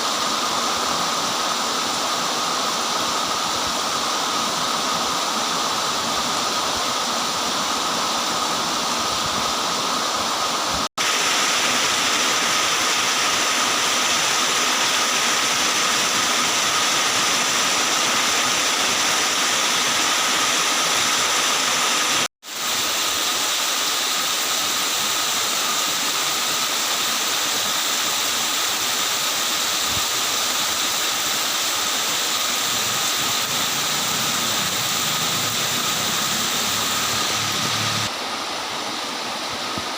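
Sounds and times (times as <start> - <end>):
heavy rain pouring: 29.6 - 38.2.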